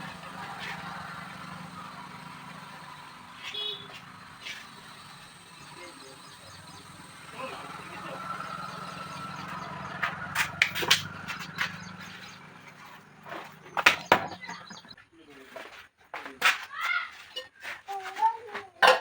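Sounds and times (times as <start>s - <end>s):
low motor hum: 0.0s - 15.0s
sharp knocks and clanks: 9.2s - 15.0s.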